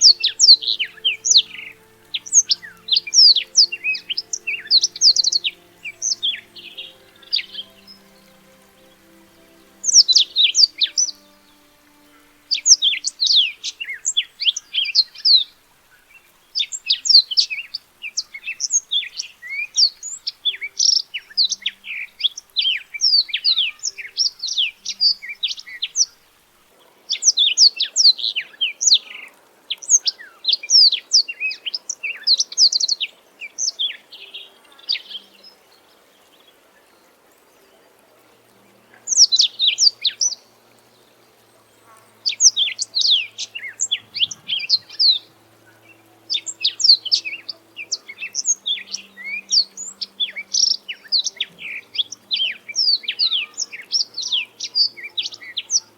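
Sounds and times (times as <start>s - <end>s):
canary singing: 0.0s - 15.4s, 41.4s - 55.9s.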